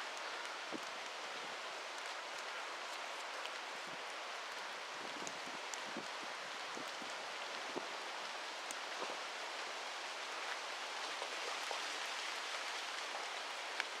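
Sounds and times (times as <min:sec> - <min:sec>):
rain hiss: 0:00.0 - 0:14.0
raindrops ticking: 0:00.1 - 0:08.9.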